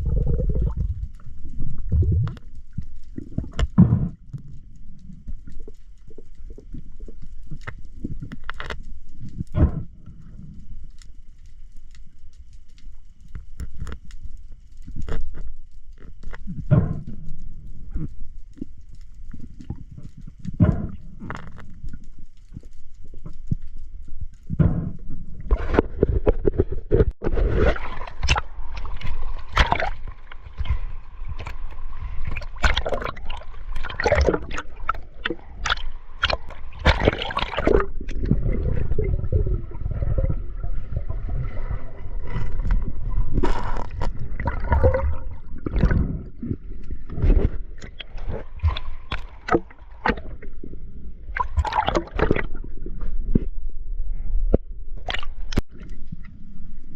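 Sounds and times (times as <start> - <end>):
sea water gurgling and sloshing: 0.0 - 56.9.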